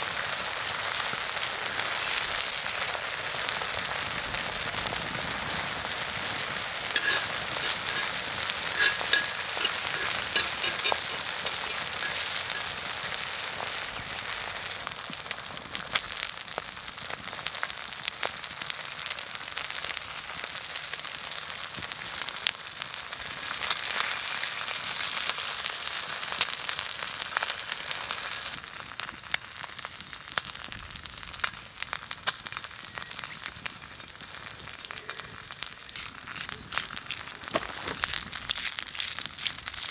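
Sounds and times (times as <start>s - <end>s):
food sizzling in fat: 0.0s - 39.9s.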